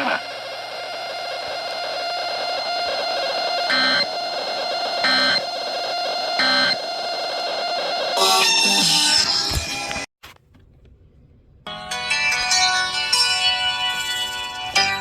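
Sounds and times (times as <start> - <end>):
shrill digital data bursts: 2.3 - 7.4.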